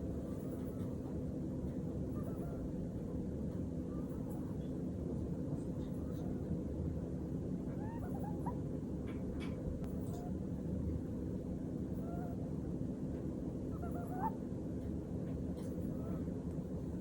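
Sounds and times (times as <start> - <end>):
low background hum: 0.0 - 17.0
rabbit snoring squeaks: 0.2 - 1.2, 2.0 - 3.1, 3.8 - 4.8, 5.8 - 6.6, 7.6 - 8.7, 13.6 - 14.4, 15.6 - 17.0.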